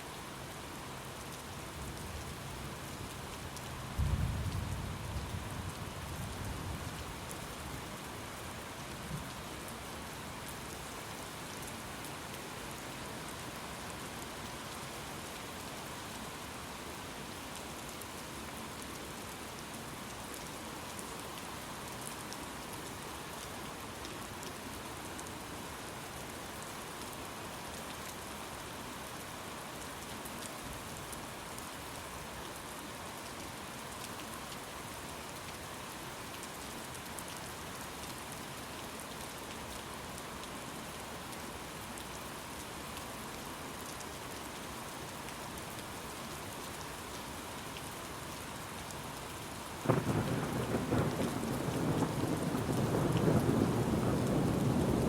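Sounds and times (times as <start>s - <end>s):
steady rain falling: 0.0s - 55.0s
thunder rumbling: 49.8s - 55.0s.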